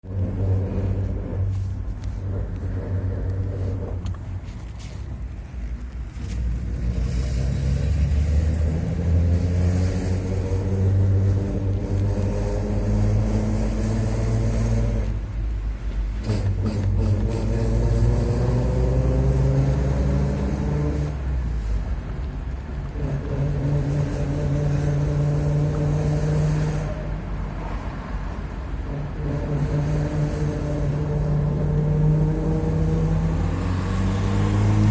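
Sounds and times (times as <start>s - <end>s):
car engine accelerating: 5.3s - 22.2s, 22.8s - 34.9s.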